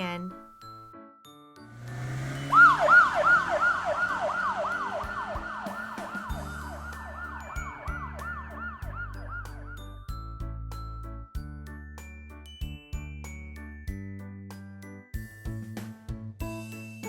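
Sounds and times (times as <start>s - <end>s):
police siren wailing: 2.1s - 9.8s.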